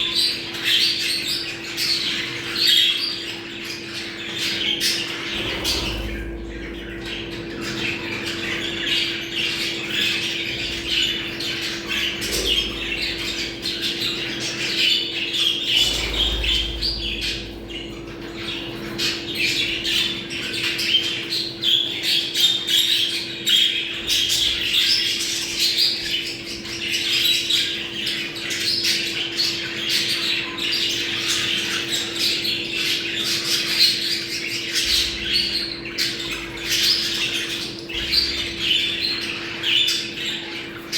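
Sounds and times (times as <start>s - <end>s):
budgerigars chattering and warbling: 0.0s - 40.9s
steady low hum: 3.8s - 21.6s.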